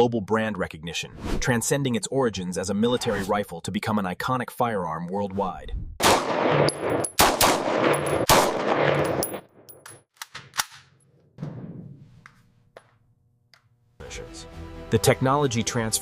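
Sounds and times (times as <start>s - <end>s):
rifle shots: 6.0s - 9.7s.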